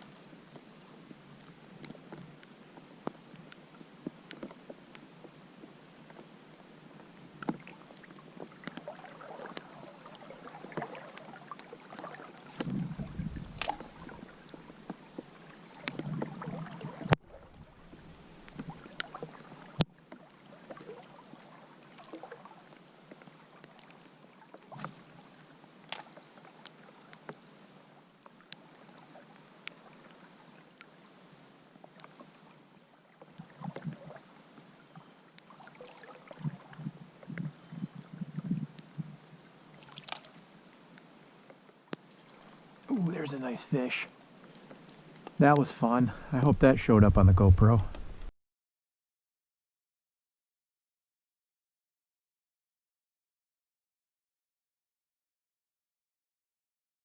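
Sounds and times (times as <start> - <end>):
creek water splashing: 7.6 - 22.7, 35.5 - 36.8, 39.2 - 40.7, 42.0 - 46.5.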